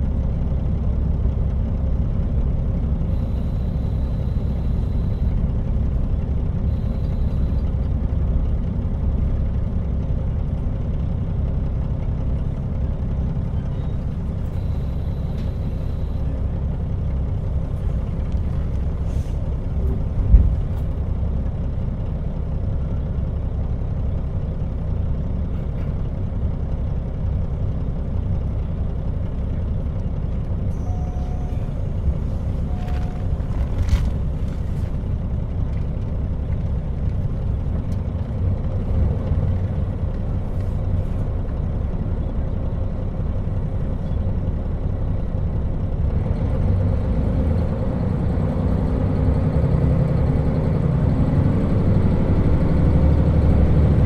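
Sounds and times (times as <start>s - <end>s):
diesel engine rumble: 0.0s - 54.0s
train wheels on rails: 30.8s - 36.0s.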